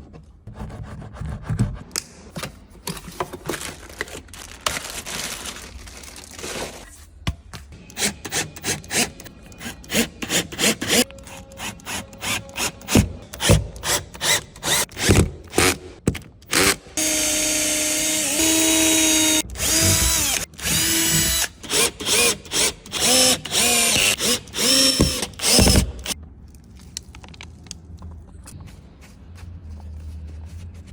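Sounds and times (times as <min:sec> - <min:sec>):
power drill running: 0:16.5 - 0:26.2.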